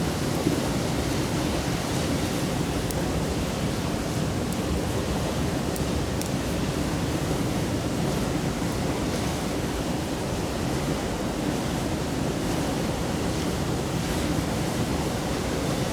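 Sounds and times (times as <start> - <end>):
campfire crackles: 0.1 - 8.7.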